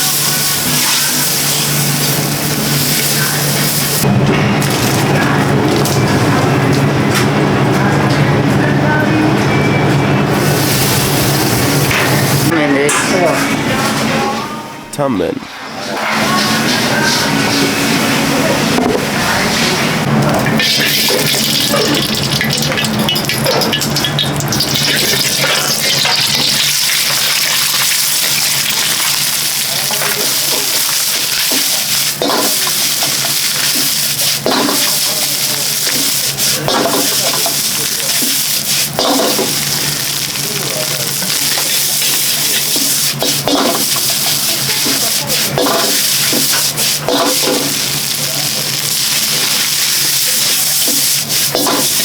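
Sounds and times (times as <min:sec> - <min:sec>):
food sizzling in a wok: 0:00.0 - 0:04.1, 0:20.6 - 0:52.0.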